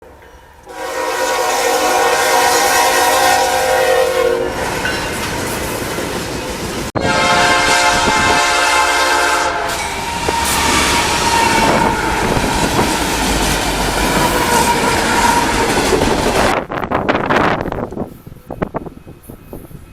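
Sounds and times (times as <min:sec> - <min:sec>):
train wheels rushing on rails: 0:00.0 - 0:19.9
train air horn blasts: 0:00.3 - 0:04.8, 0:07.0 - 0:16.6.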